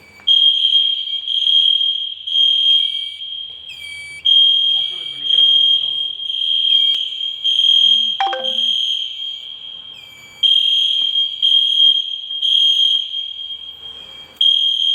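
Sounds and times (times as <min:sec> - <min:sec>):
fire alarm high-pitched tone: 0:04.4 - 0:14.9.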